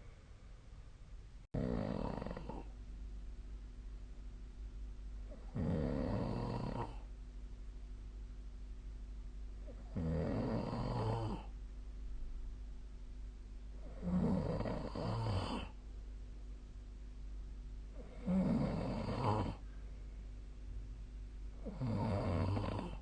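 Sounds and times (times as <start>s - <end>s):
person snoring: 1.6s - 2.7s, 5.3s - 7.0s, 9.7s - 11.5s, 13.8s - 15.8s, 18.0s - 19.6s, 21.6s - 23.0s
quiet breathing: 17.9s - 20.5s, 21.4s - 23.0s.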